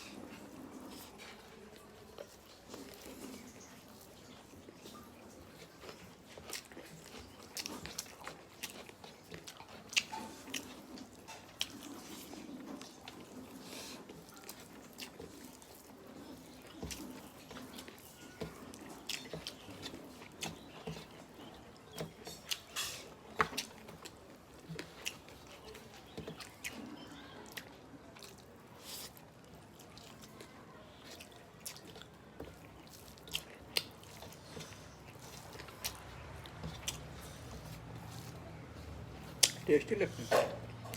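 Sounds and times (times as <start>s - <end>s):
people chewing food: 0.0s - 40.9s
mouth clicks and smacks: 39.3s - 39.7s.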